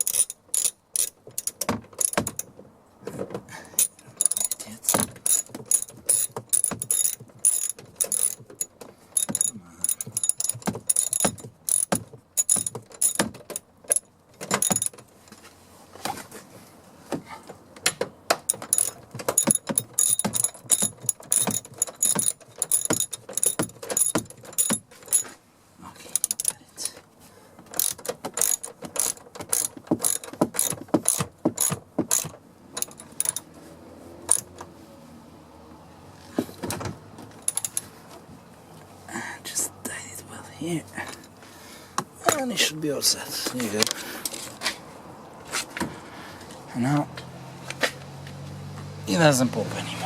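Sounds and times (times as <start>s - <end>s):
metal tools clinking: 0.0s - 2.5s, 3.7s - 15.0s, 18.5s - 25.4s, 26.0s - 27.0s, 27.7s - 34.7s, 37.3s - 38.0s
ratchet wrench clicking: 0.0s - 2.5s, 3.8s - 14.9s, 18.5s - 25.3s, 26.1s - 26.6s, 27.7s - 33.5s, 34.3s - 34.6s, 37.4s - 37.9s.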